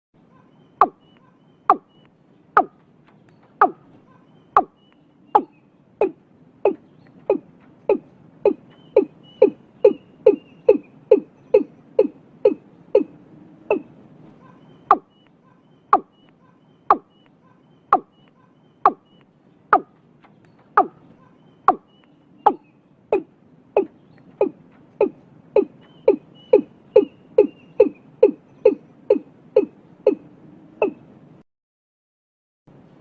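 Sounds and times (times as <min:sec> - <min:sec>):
faint high chirps: 0:00.2 - 0:31.1
bird calling sharp falling notes: 0:03.4 - 0:19.2, 0:19.8 - 0:22.6.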